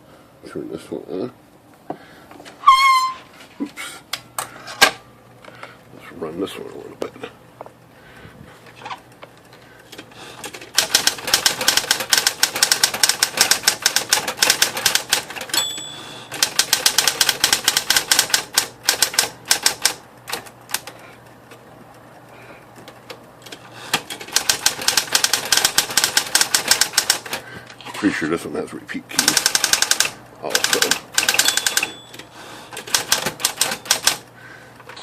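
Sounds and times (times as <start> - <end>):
typewriter motor humming: 9.8 - 21.6, 22.8 - 28.1, 29.1 - 35.0
typewriter key strikes: 10.5 - 20.9, 24.0 - 27.4, 29.2 - 32.2, 32.8 - 34.2
typewriter bell ring: 14.4 - 18.4, 29.2 - 32.3, 33.0 - 34.2.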